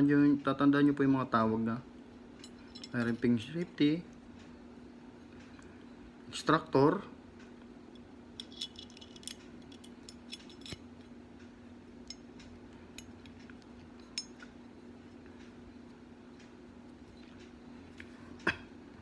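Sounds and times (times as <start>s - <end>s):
metallic clicks of small parts: 7.9s - 11.1s.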